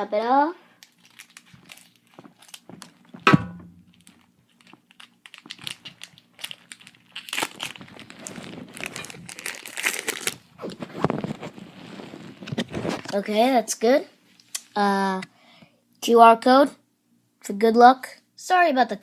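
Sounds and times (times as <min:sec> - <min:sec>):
scissors cutting foil wrapper: 0:00.8 - 0:03.1, 0:03.9 - 0:10.4
foil crinkling and tearing: 0:00.8 - 0:03.2, 0:03.8 - 0:13.1.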